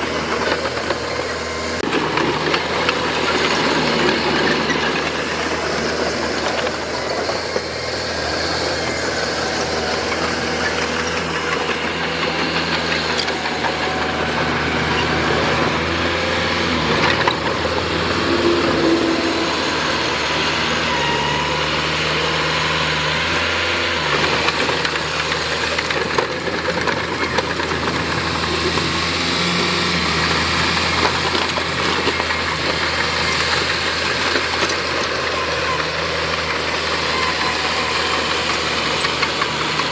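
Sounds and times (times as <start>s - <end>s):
heavy diesel engine running: 0.0s - 39.9s.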